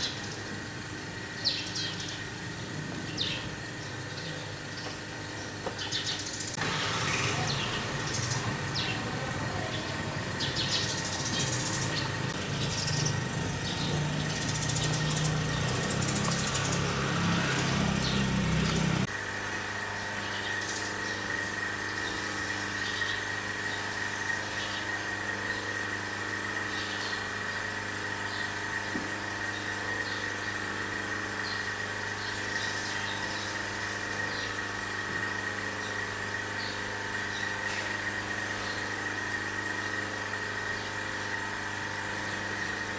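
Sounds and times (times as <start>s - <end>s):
motor humming: 4.8s - 42.9s.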